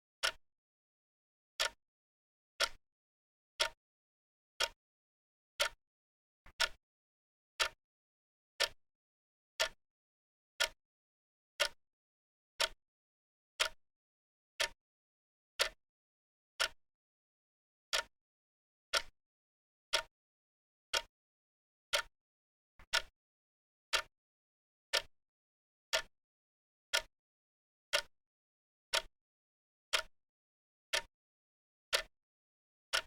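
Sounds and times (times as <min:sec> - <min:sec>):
clock ticking: 0:01.6 - 0:01.8, 0:02.6 - 0:02.8, 0:06.5 - 0:06.8, 0:15.6 - 0:15.8, 0:19.9 - 0:20.1, 0:21.9 - 0:22.1, 0:22.8 - 0:23.1, 0:27.9 - 0:28.1, 0:28.9 - 0:29.1, 0:30.9 - 0:31.1, 0:31.9 - 0:32.1.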